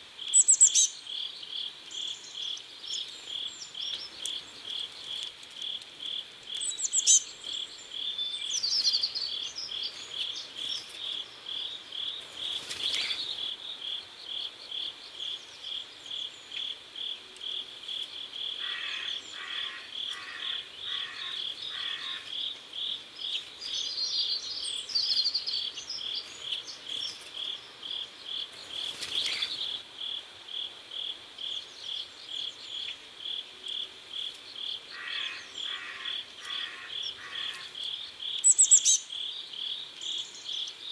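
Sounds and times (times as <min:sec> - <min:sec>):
crickets chirping: 0:00.2 - 0:40.9
bird calling: 0:18.6 - 0:22.3, 0:34.9 - 0:37.8.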